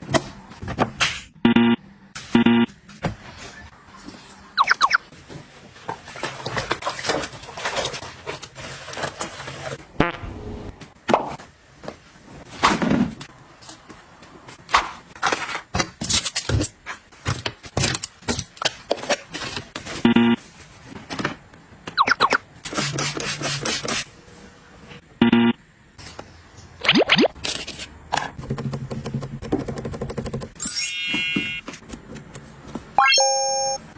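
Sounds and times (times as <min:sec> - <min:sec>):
rustling and scraping: 0:02.9 - 0:09.9
ringing pitched tone: 0:33.0 - 0:33.8.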